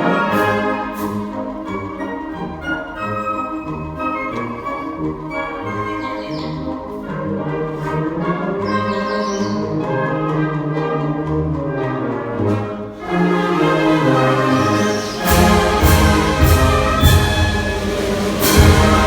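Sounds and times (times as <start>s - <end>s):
wind band playing chords: 0.0s - 19.0s
sharp percussion strikes: 14.7s - 19.0s.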